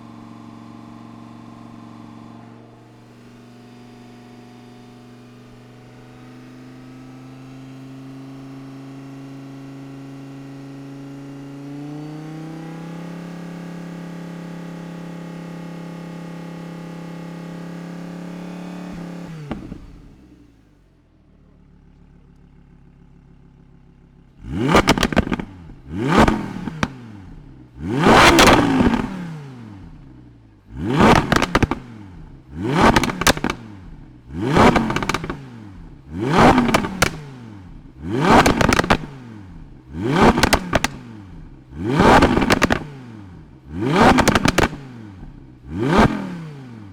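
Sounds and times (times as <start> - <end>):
car engine idling: 0.0 - 6.4, 18.9 - 46.2
engine revving blips: 24.4 - 30.1, 30.7 - 46.9.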